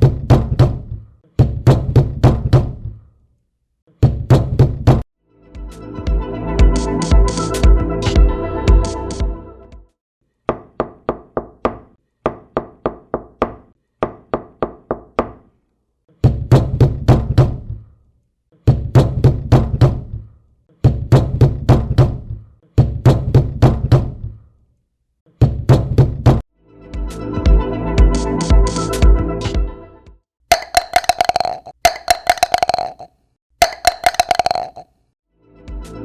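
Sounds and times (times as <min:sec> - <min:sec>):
knocking on a hard surface: 0:30.5 - 0:34.8.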